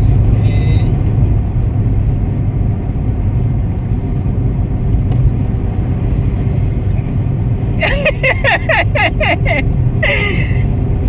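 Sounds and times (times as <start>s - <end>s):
car engine and road noise: 0.0s - 11.0s.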